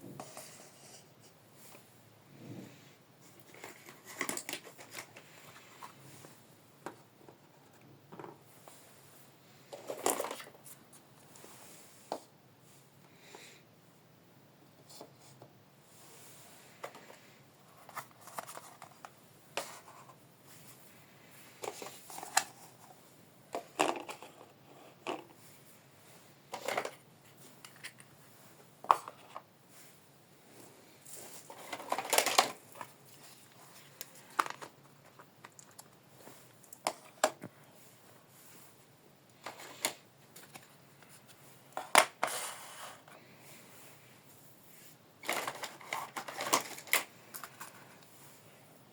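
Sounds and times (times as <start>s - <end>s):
rustling scrapes: 23.8s - 34.7s, 37.6s - 48.6s.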